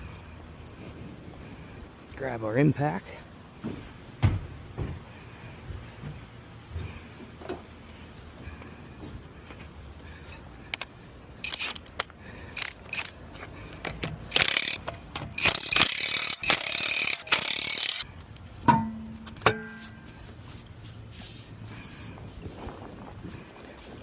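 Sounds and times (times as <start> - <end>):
impact wrench running: 11.4 - 12.0, 12.6 - 13.2, 14.0 - 18.0
sharp metal clanks: 18.7 - 20.0.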